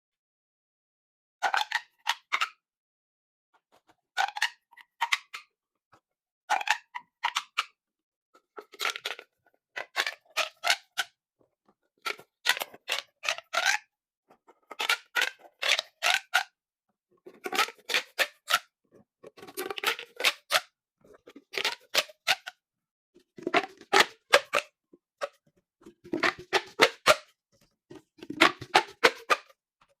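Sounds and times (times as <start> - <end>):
plastic pop tubes popping: 14.7 - 16.5, 19.4 - 20.7, 21.5 - 22.6, 23.4 - 27.3, 27.9 - 29.6.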